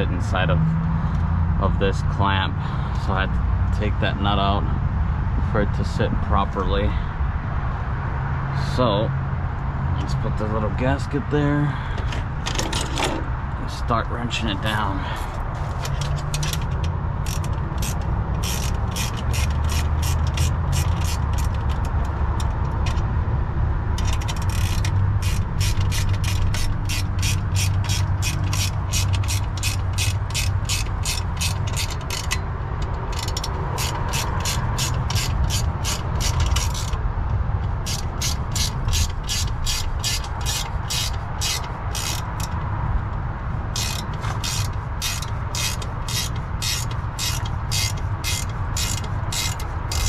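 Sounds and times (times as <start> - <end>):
ratchet wrench clicking: 15.8 - 23.0, 24.0 - 37.0, 37.6 - 42.7, 43.7 - 50.0.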